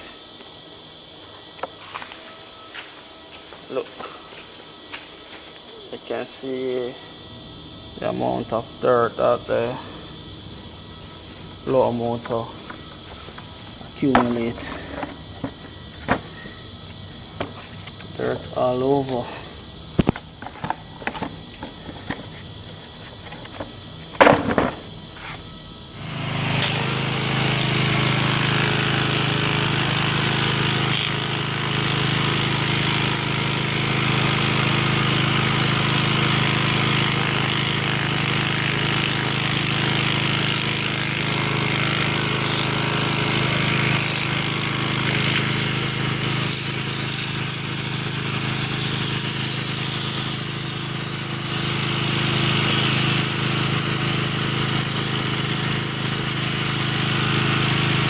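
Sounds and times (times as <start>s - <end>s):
cleaning machine humming and hissing: 25.2s - 58.0s.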